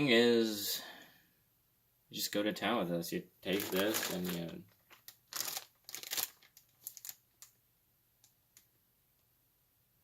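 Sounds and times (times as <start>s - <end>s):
packaging rustling: 3.5s - 7.6s.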